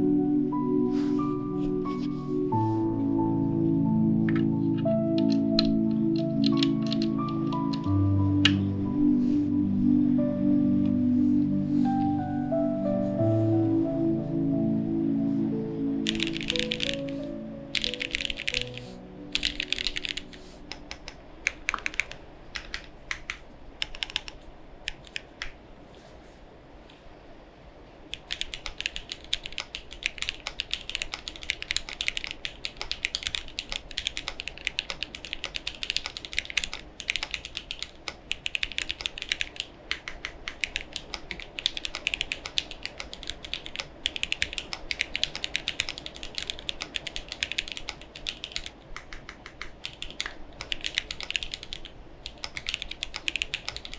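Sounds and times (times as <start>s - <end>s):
mechanical keyboard typing: 5.1s - 8.6s, 16.0s - 25.6s, 28.1s - 53.9s.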